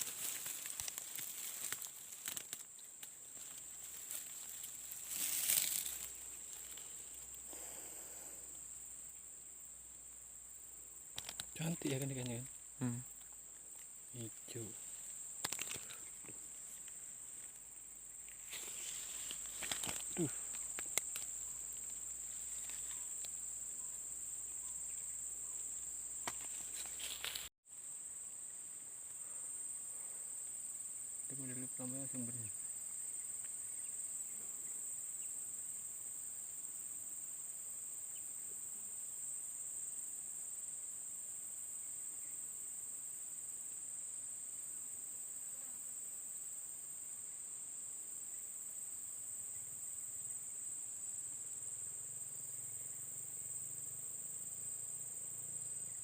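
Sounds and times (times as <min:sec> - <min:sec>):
twigs snapping: 0:00.0 - 0:07.3, 0:11.1 - 0:11.6, 0:15.4 - 0:17.0, 0:18.3 - 0:23.4, 0:26.2 - 0:27.5
leaves and brush rustling: 0:00.0 - 0:07.8, 0:13.6 - 0:23.6, 0:25.6 - 0:27.5
high-pitched insect chorus: 0:00.0 - 0:56.0.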